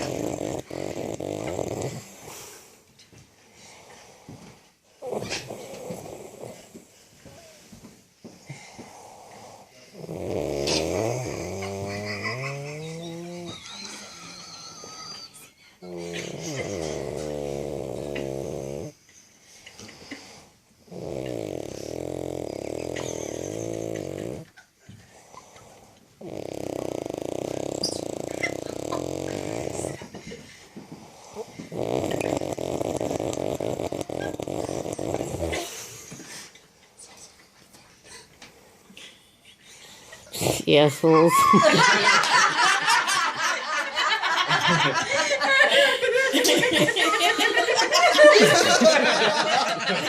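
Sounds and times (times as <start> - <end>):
woman snoring: 0.0 - 2.5, 5.0 - 6.8, 8.5 - 19.0, 19.8 - 24.5, 25.2 - 30.2, 31.0 - 36.0
quiet breathing: 0.0 - 10.1, 15.1 - 23.7, 24.5 - 40.7.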